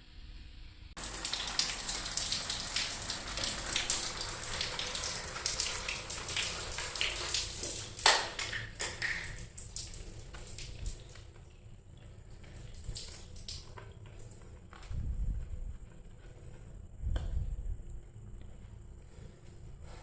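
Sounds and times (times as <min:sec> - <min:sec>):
faucet water running and splashing: 0:01.0 - 0:14.6.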